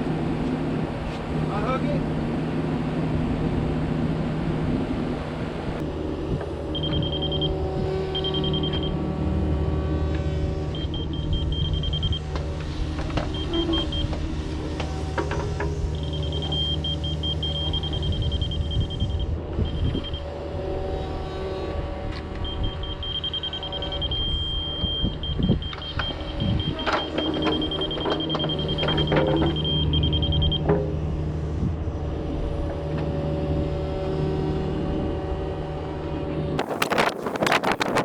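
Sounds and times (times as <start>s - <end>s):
diesel engine running: 5.8s - 20.6s.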